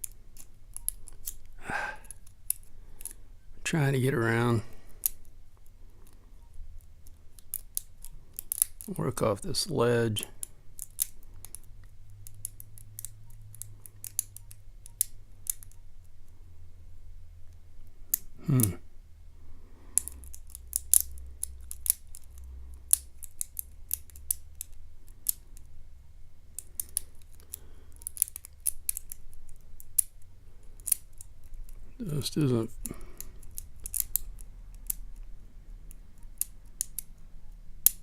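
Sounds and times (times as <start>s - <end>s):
lock pick metallic clicks: 7.0s - 8.9s, 10.4s - 15.8s, 26.5s - 30.2s, 32.5s - 35.3s, 35.9s - 37.2s.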